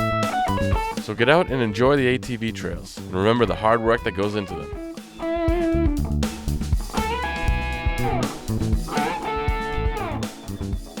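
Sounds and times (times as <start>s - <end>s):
electric guitar rock music: 0.0s - 2.1s, 3.0s - 11.0s.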